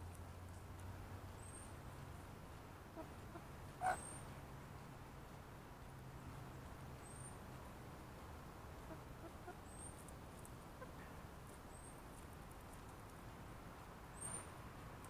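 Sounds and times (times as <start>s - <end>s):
chickens clucking softly: 8.8s - 9.7s.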